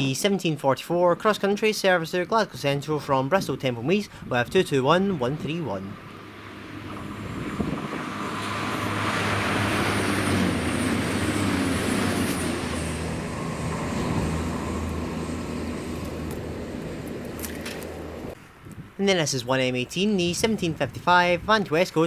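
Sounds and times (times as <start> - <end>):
diesel train engines humming: 5.0 - 18.4
rush of wheel and air noise: 5.9 - 19.0.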